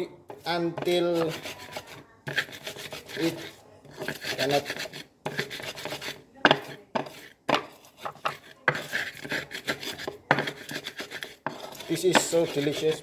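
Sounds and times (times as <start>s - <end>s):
pestle grinding in a mortar: 0.0s - 13.0s.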